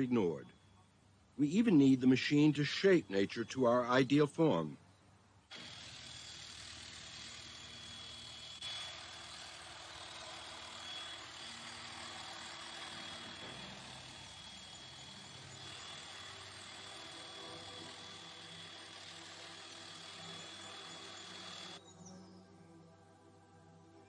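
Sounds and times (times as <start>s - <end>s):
machine engine droning: 5.5s - 21.8s.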